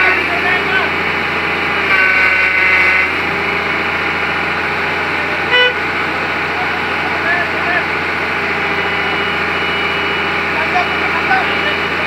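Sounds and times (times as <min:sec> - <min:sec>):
engine and machinery hum: 0:00.0 - 0:12.0
vehicle horn toot: 0:01.9 - 0:03.2, 0:05.5 - 0:05.8, 0:08.7 - 0:12.0
high steady tone: 0:05.4 - 0:05.9, 0:08.6 - 0:12.0.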